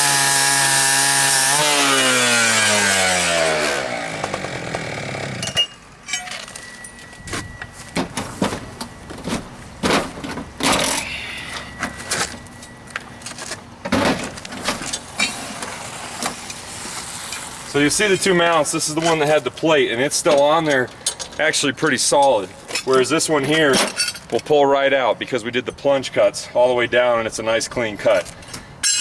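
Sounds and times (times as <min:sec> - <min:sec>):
cut-off saw winding down: 0:00.0 - 0:05.4
metal clanks and knocks: 0:05.4 - 0:15.0.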